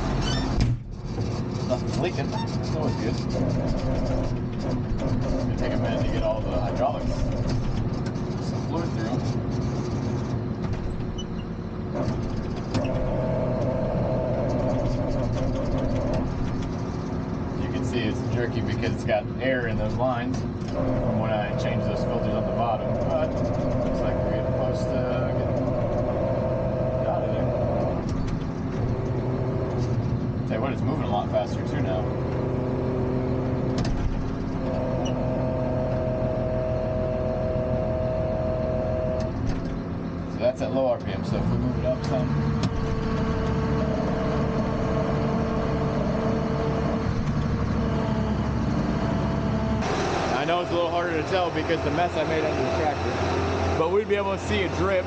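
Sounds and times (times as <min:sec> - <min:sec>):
hydraulic system whine: 0:00.0 - 0:55.0
tractor diesel engine running: 0:00.0 - 0:55.0
steady high whine: 0:42.1 - 0:55.0.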